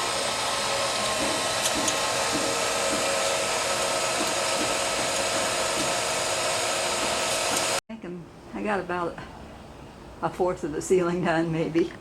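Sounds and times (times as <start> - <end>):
electric well pump running: 0.0 - 7.8.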